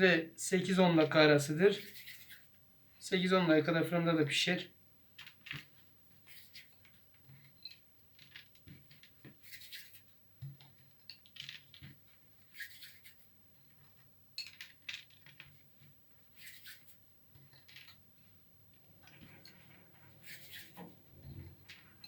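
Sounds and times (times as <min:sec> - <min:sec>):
scratchy rustles of dough: 0:01.7 - 0:02.6, 0:05.6 - 0:07.0, 0:09.2 - 0:10.2, 0:12.1 - 0:13.8, 0:15.2 - 0:17.1, 0:19.1 - 0:22.0.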